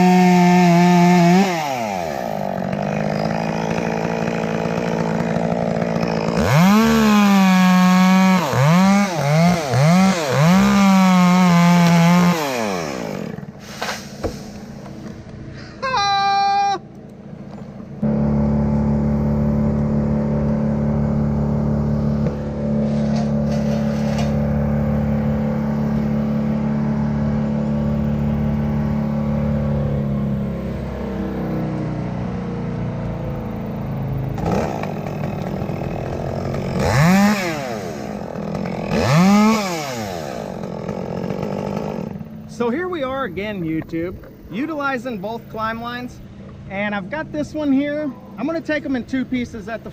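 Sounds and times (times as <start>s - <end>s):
loud machine engine running: 0.0s - 13.6s, 16.9s - 42.6s
small engine revving: 0.0s - 14.8s, 18.0s - 42.6s
chainsaw revving: 0.0s - 14.9s, 18.0s - 43.5s.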